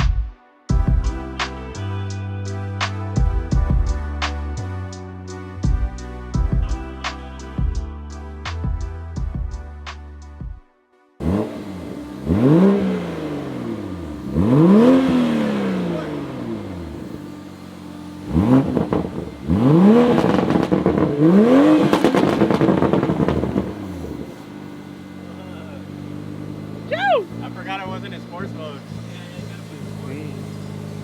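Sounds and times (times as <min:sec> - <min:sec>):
car engine revving: 0:11.2 - 0:31.0
exhaust pops: 0:18.2 - 0:24.5.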